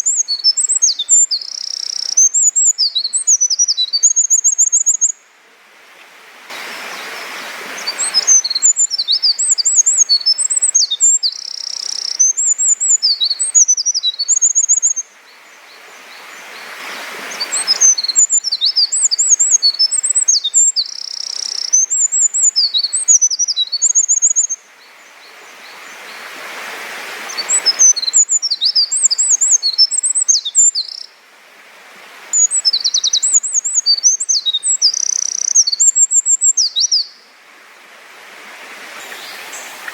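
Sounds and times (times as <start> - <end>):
wren singing rapid trills: 0.0 - 5.1, 7.8 - 15.0, 17.5 - 24.6, 27.5 - 31.1, 32.4 - 37.2.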